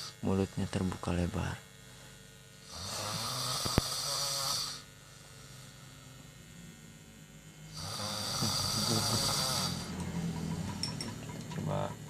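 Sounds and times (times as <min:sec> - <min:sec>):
person snoring: 0:02.6 - 0:05.8, 0:07.7 - 0:10.7.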